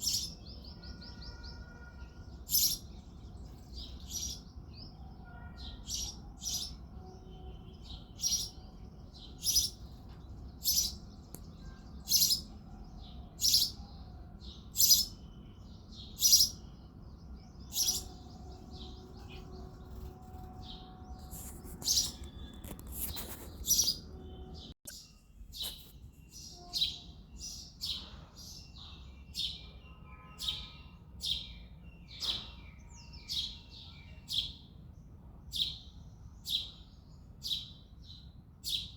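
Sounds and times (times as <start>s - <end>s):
sparrow chirping: 0.0s - 34.9s, 35.5s - 38.9s.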